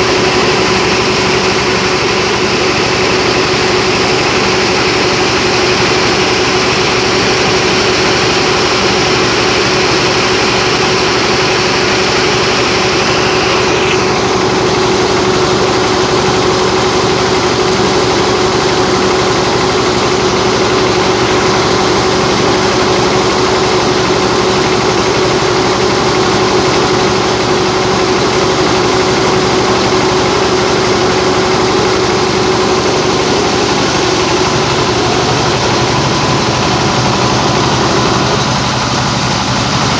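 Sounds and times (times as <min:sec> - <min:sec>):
diesel engine running: 0:00.0 - 0:39.9
rice mill noise: 0:10.2 - 0:39.9.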